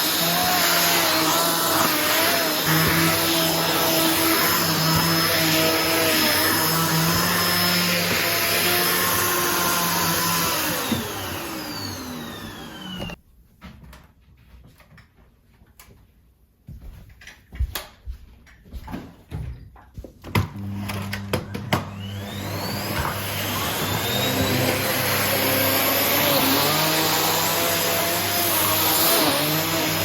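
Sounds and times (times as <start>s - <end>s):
vacuum cleaner motor whine: 0.0s - 13.2s, 20.4s - 30.0s.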